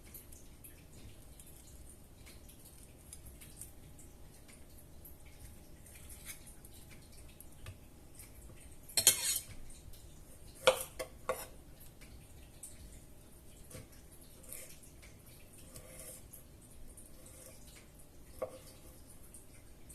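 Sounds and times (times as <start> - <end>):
dishes and cutlery clattering: 9.0 - 9.6.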